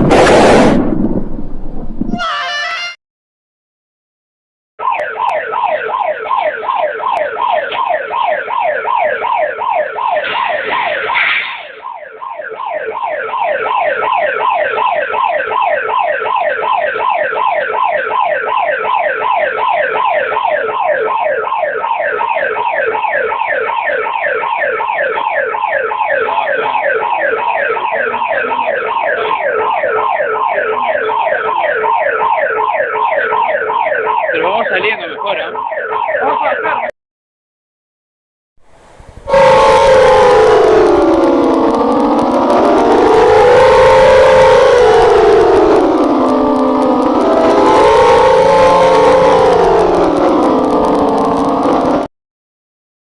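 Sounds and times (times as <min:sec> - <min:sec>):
brief noise burst: 0:00.0 - 0:02.7, 0:10.2 - 0:11.9
electronic alarm siren: 0:02.1 - 0:03.0, 0:04.8 - 0:36.9, 0:39.2 - 0:52.1.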